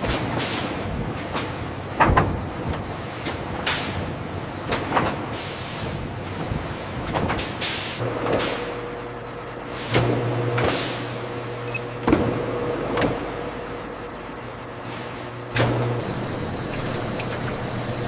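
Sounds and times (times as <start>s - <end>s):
plant machinery running: 15.6s - 18.0s
thin high whine: 16.0s - 18.0s.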